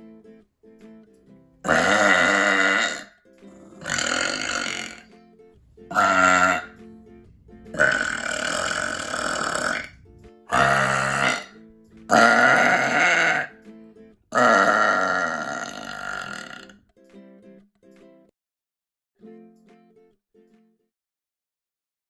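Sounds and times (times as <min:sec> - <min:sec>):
quiet background music: 0:00.0 - 0:18.3
woman burping loudly: 0:01.6 - 0:05.1, 0:05.9 - 0:06.8, 0:07.7 - 0:13.5, 0:14.3 - 0:16.8.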